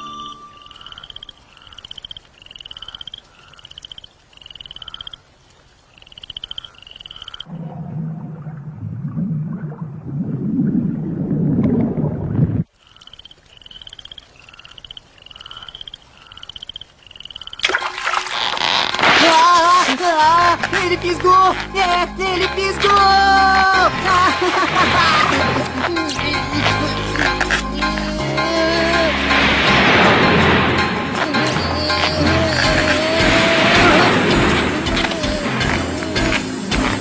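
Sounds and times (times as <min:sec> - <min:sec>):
frog croaking: 0:00.5 - 0:07.7, 0:12.6 - 0:19.1, 0:30.8 - 0:37.0
low rumbling swell: 0:28.2 - 0:35.5.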